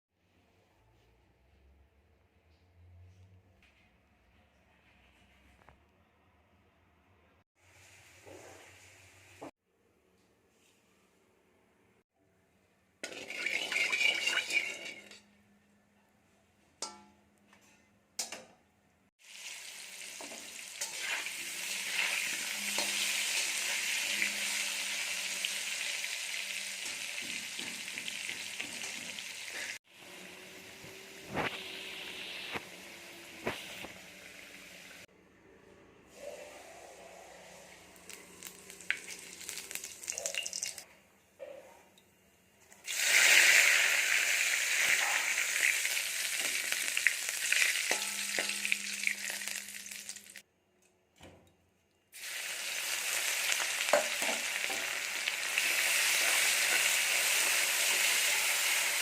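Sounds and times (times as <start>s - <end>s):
food sizzling in hot oil: 13.0s - 15.2s, 19.2s - 35.1s, 38.0s - 40.8s, 42.8s - 50.4s, 52.2s - 59.0s
stirring scrape and clink: 13.0s - 15.4s.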